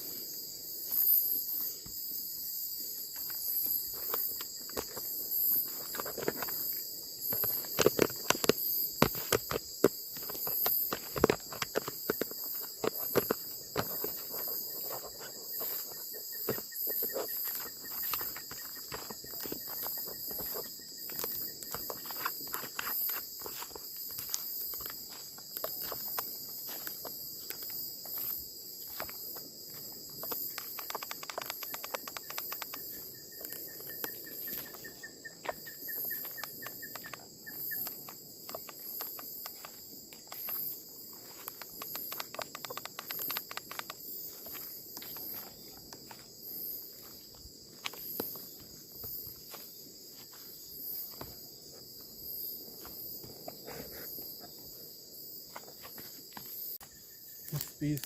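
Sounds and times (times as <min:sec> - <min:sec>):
insects chirping: 0:00.0 - 0:58.0
footsteps crackling brush: 0:03.0 - 0:54.5.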